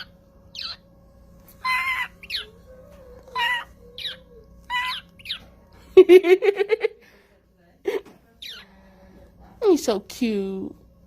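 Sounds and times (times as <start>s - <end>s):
parrot squawks: 0.0s - 0.8s, 1.6s - 5.5s, 8.4s - 8.7s.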